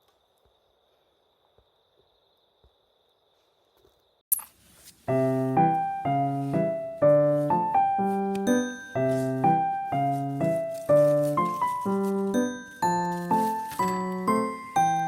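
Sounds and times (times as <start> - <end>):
piano music: 5.0 - 15.0.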